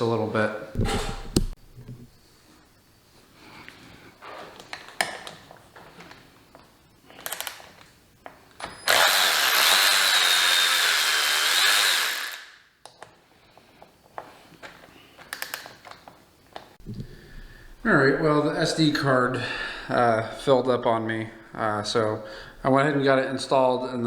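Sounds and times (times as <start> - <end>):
handling knocks and clicks: 0.8 - 2.1
power tool high whine: 8.8 - 12.6.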